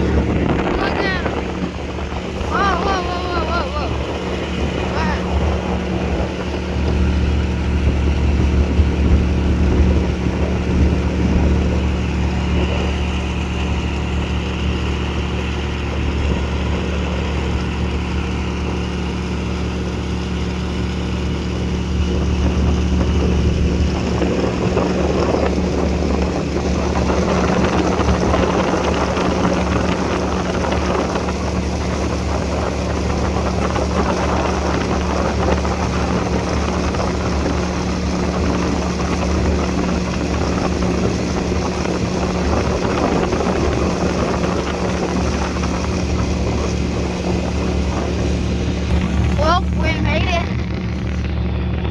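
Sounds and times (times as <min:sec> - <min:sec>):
wind rushing: 0:00.0 - 0:12.0
water rushing: 0:00.0 - 0:18.6, 0:20.8 - 0:51.9
outboard motor hum: 0:00.0 - 0:51.9.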